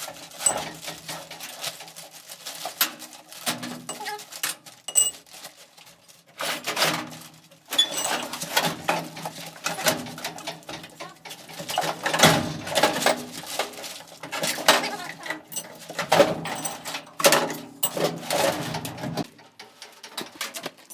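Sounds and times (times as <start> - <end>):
metal tools clanking: 0.4 - 1.0, 4.9 - 5.2, 7.7 - 19.0.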